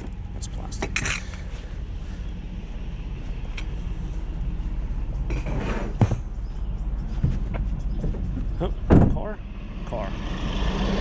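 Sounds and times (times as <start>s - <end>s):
vehicle engine idling: 0.0s - 10.1s
rustling scrape: 5.3s - 6.1s.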